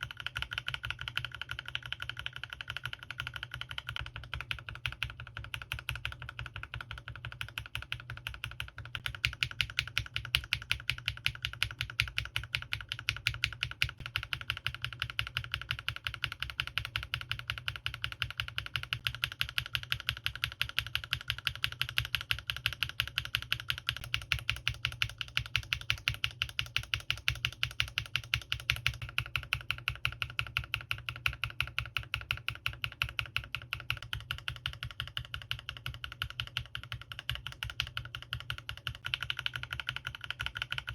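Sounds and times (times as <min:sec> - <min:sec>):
mechanical keyboard key clicking: 0:19.0 - 0:40.9.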